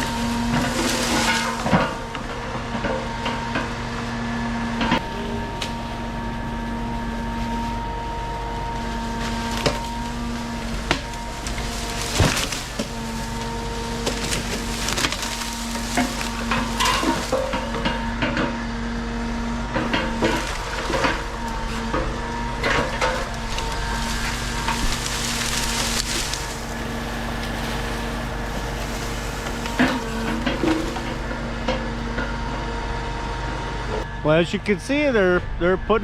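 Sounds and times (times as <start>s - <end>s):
engine hum: 0.0s - 36.0s.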